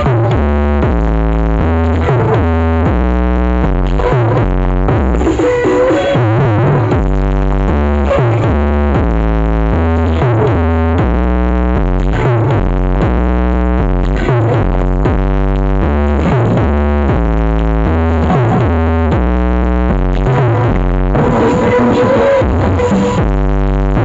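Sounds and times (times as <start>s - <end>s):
deep bass line: 0.0s - 24.0s.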